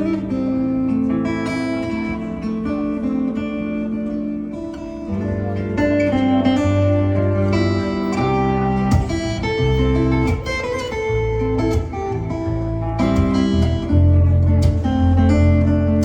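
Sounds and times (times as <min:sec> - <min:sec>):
plucked acoustic guitar melody: 0:00.0 - 0:16.0
sustained low bass notes: 0:05.1 - 0:16.0.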